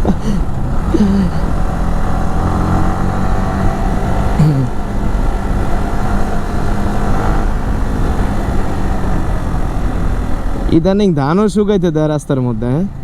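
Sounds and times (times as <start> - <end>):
motorcycle engine running: 0.0 - 11.9.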